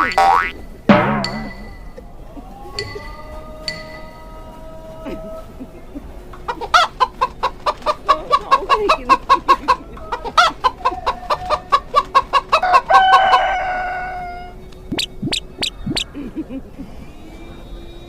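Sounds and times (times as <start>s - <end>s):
chicken clucking: 2.5s - 16.7s
chicken long squawk: 10.1s - 14.6s.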